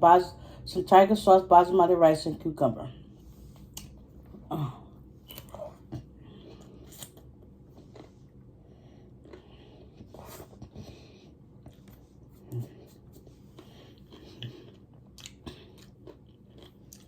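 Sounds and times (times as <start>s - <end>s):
person chewing rice: 3.3s - 4.5s, 5.2s - 17.0s.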